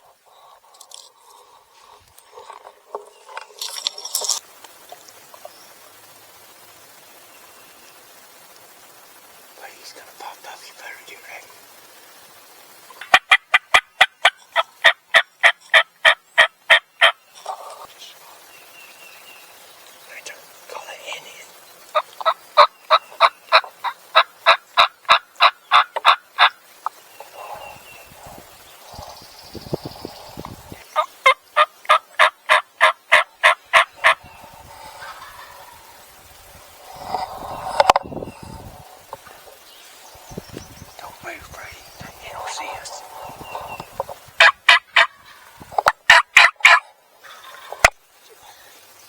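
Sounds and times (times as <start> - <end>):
wild turkey yelping: 21.9 - 26.6, 30.8 - 36.0, 42.5 - 47.9
turkey yelping: 31.0 - 34.2, 44.4 - 45.4, 46.1 - 47.9.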